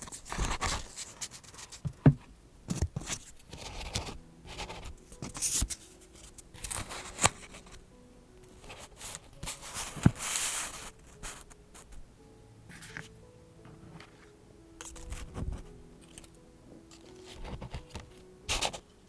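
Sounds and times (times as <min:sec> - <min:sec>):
paper rustling and sliding: 0:00.0 - 0:02.1, 0:03.0 - 0:07.8, 0:08.6 - 0:12.0, 0:12.7 - 0:18.9
soft background music: 0:00.0 - 0:19.0.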